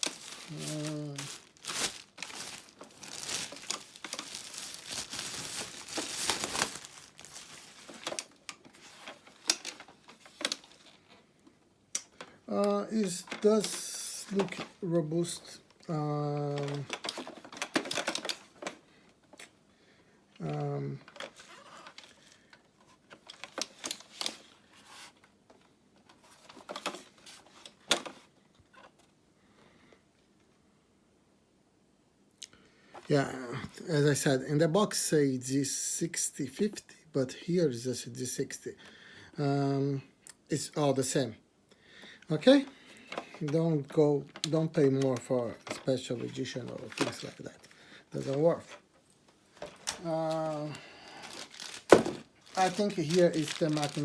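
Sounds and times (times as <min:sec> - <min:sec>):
handling clicks and rustles: 0:00.0 - 0:11.0, 0:16.5 - 0:19.5, 0:42.3 - 0:54.0
plastic packaging crinkling: 0:00.0 - 0:11.0, 0:16.4 - 0:18.8, 0:42.3 - 0:48.8, 0:49.5 - 0:54.0.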